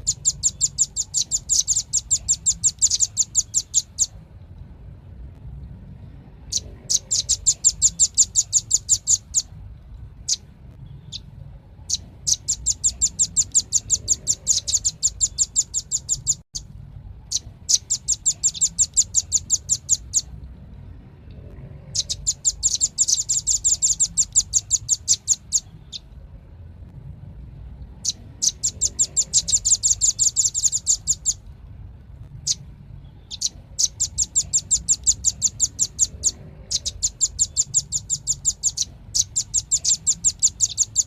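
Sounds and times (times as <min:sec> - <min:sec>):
bird singing high trills: 0:00.0 - 0:04.2, 0:06.5 - 0:09.5, 0:10.3 - 0:16.7, 0:17.3 - 0:20.3, 0:21.9 - 0:26.1, 0:28.0 - 0:31.4, 0:32.4 - 0:41.0.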